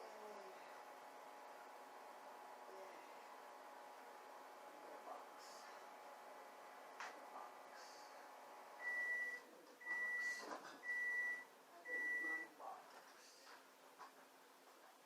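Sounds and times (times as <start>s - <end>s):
electronic beeps: 8.8s - 12.5s.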